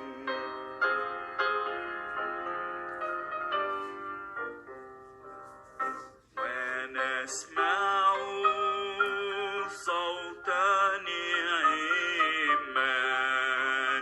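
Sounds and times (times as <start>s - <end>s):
person singing: 0.0s - 0.9s, 6.4s - 14.0s.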